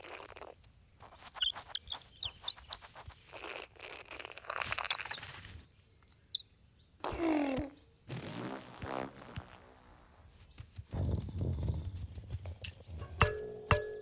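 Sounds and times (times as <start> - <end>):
rustling and pattering: 0.5 - 3.4, 4.4 - 5.7, 10.2 - 13.8
high bird chirps: 1.4 - 2.9, 6.0 - 6.9.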